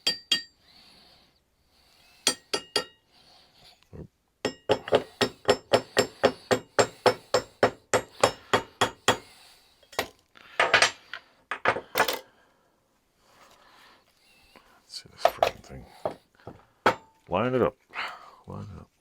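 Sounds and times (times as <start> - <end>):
hammer tapping on metal: 0.0 - 0.5, 2.3 - 3.0, 4.4 - 9.3, 16.0 - 17.1.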